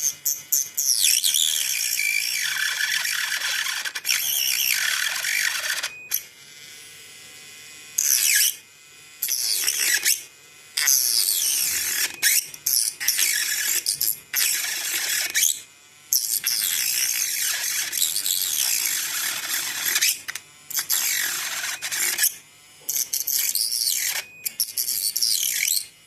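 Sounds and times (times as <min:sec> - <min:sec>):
grinder cutting plastic: 0:00.0 - 0:06.8, 0:08.0 - 0:26.0.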